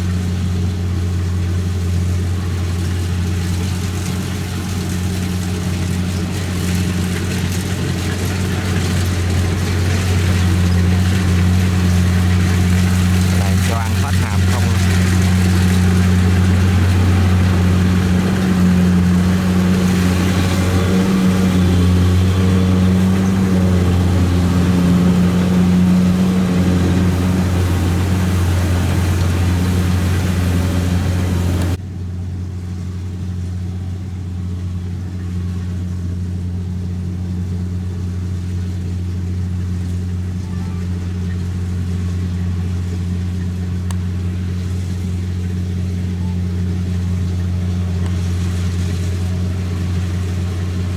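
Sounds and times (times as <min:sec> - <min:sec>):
low engine hum: 0:00.0 - 0:50.9
machinery clatter and rush: 0:03.4 - 0:31.8.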